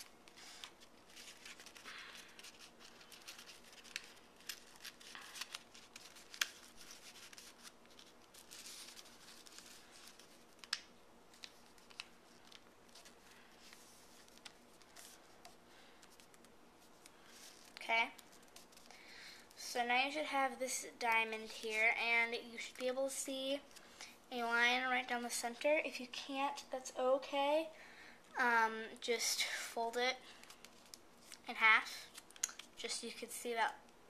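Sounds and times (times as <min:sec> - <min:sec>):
crisp paper creasing clicks: 0:00.0 - 0:19.0
paper rustling and crinkling: 0:00.0 - 0:19.0, 0:30.2 - 0:31.5.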